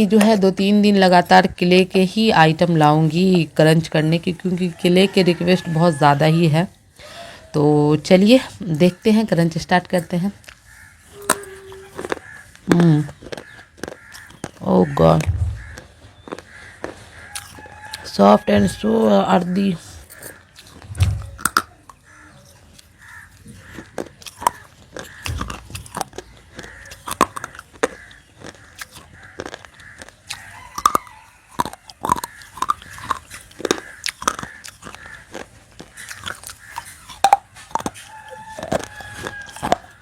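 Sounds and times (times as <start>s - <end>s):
chewing crunchy baked clay: 8.8s - 40.0s.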